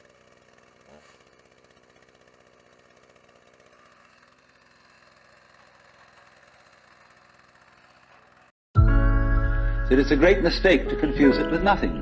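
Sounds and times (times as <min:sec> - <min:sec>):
chainsaw engine running: 0:00.0 - 0:08.6.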